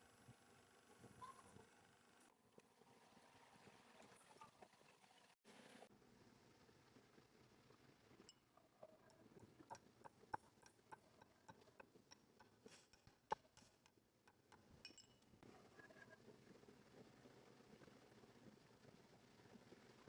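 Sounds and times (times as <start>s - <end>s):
faint clicks and clinks: 8.2s - 15.4s.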